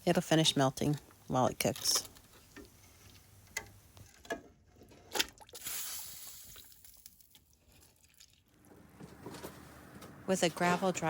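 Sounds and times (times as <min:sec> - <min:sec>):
liquid splashing into a pot: 0:05.1 - 0:08.6.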